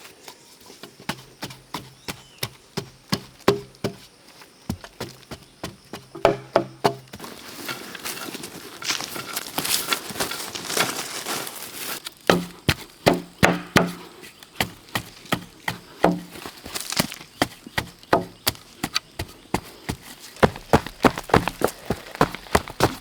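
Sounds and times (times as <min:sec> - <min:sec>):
blade chopping wood: 0:06.2 - 0:07.2, 0:12.1 - 0:19.3
wood crackling and splintering: 0:06.2 - 0:19.2, 0:19.9 - 0:23.0.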